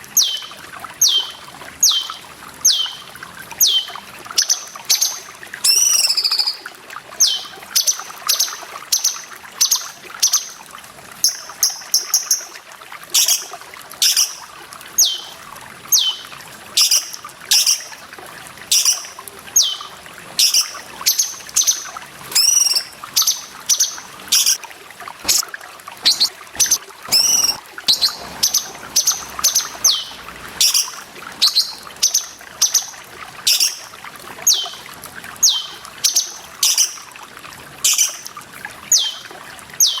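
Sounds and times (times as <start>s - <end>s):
water trickling: 0.0s - 40.0s
bird calling: 0.1s - 6.6s, 15.0s - 17.9s, 22.4s - 24.6s, 26.0s - 32.8s, 35.4s - 35.8s.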